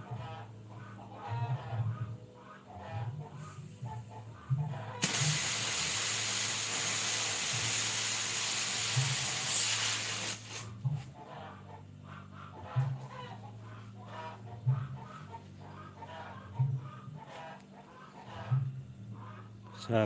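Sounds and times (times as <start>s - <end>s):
pressurised gas hissing through tubing: 5.0s - 10.7s.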